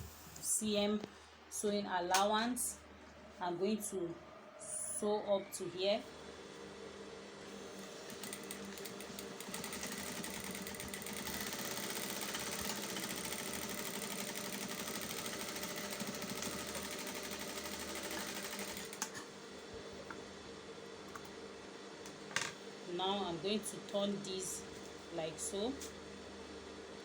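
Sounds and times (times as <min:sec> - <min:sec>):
sewing machine needle rattling: 0:08.1 - 0:19.1.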